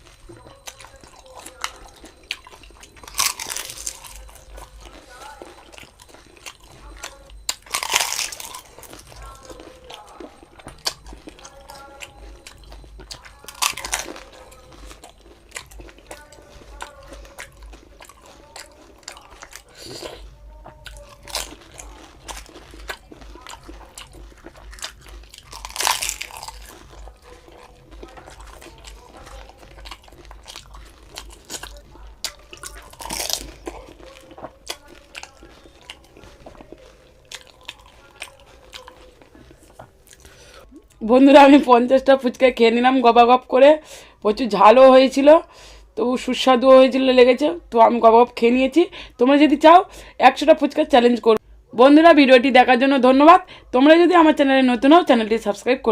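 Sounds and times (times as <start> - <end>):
crisp shells crunching: 0.0 - 20.1, 20.9 - 40.6
wet chewing: 0.0 - 46.0.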